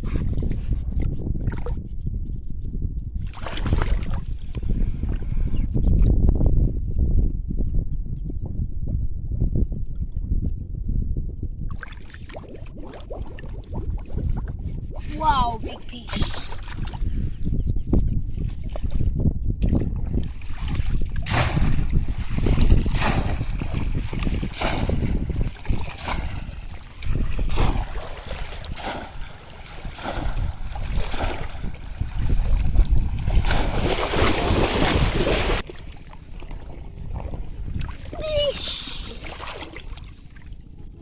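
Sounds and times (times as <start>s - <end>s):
wind rumble on microphone: 0.0s - 41.0s
splashing in shallow water: 3.3s - 4.3s, 19.7s - 40.6s.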